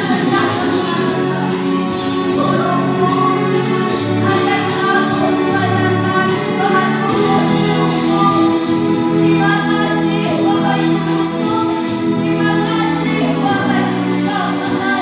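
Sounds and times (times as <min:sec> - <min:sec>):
children's choir singing: 0:00.0 - 0:15.0
musical accompaniment: 0:00.0 - 0:15.0.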